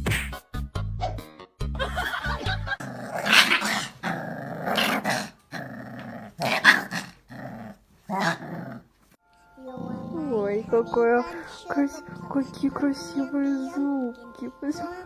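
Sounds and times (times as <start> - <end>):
music: 0.0 - 2.8, 9.2 - 15.0
dog growling and snarling: 2.8 - 9.0, 9.8 - 10.4.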